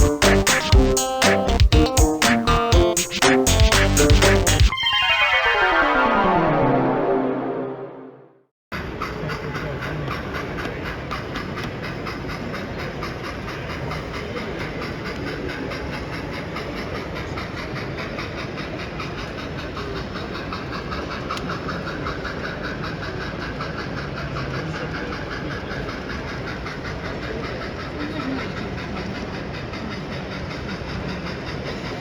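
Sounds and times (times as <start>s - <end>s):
hall background noise: 0.0s - 32.0s
model train wheels clicking: 9.0s - 32.0s.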